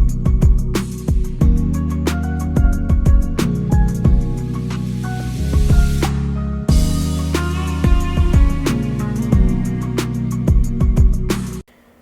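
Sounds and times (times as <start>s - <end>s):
sustained bass line: 0.0s - 11.6s
deep drum hits: 5.6s - 6.1s, 6.7s - 7.1s.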